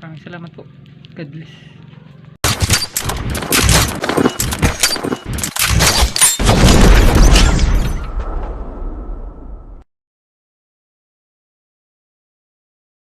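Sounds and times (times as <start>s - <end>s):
loud bangs and crashes: 2.4s - 9.8s.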